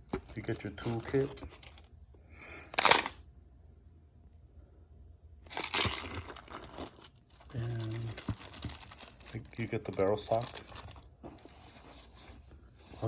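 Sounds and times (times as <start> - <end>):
packaging rustling and tearing: 0.1 - 1.8, 5.5 - 13.0.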